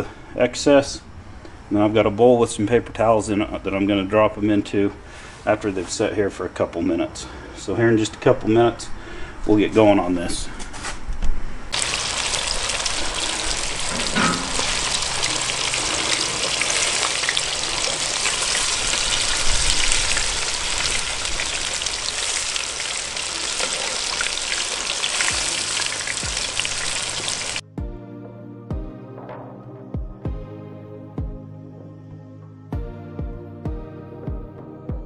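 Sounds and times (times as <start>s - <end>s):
food deep-frying in oil: 11.7s - 27.6s.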